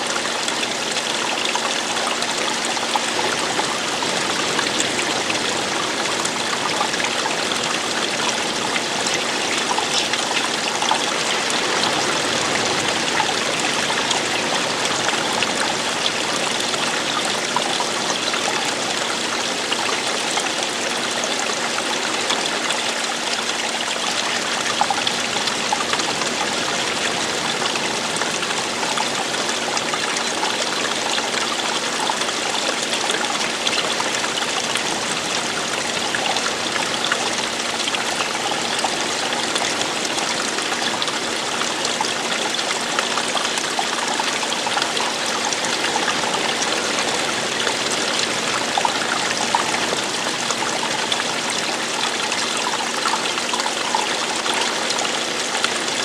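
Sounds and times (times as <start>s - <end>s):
running water flowing: 0.0s - 56.0s.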